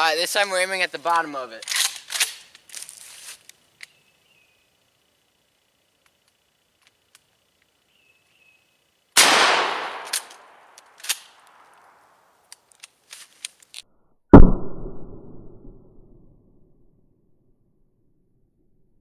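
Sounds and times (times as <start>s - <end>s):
shotgun shots with echo: 9.2s - 10.2s, 14.4s - 14.9s.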